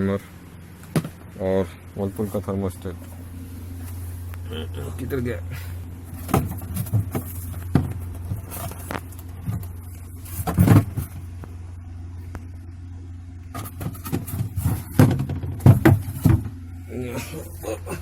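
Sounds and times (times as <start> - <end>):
steady low hum: 0.0 - 18.0
objects knocking and clattering: 6.1 - 9.7, 10.3 - 11.2, 13.6 - 16.6.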